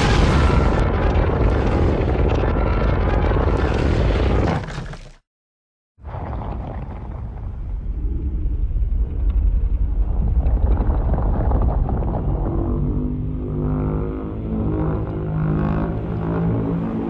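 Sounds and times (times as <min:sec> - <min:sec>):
deep rumbling creature sound: 0:00.0 - 0:05.2, 0:06.0 - 0:17.0.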